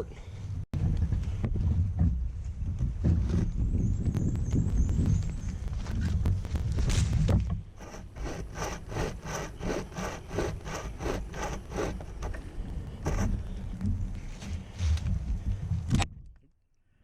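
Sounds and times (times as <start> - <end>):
hand chainsaw rasping through wood: 7.8 - 12.4, 13.0 - 13.5.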